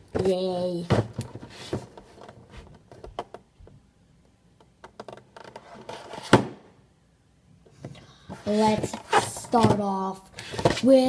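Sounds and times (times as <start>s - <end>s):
boxes being handled: 0.1s - 3.4s, 4.8s - 6.6s, 7.8s - 11.0s.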